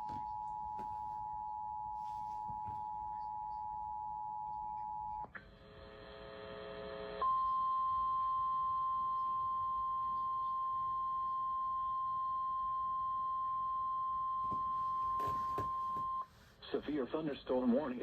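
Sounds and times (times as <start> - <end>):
steady warning alarm tone: 0.0 - 5.2, 7.2 - 16.4
faint cluster of steady tones: 0.0 - 16.6.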